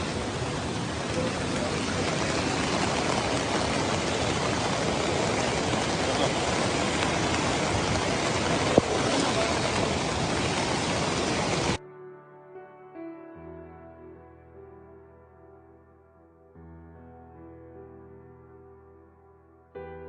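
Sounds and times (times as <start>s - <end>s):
floodwater rushing: 0.0s - 11.8s.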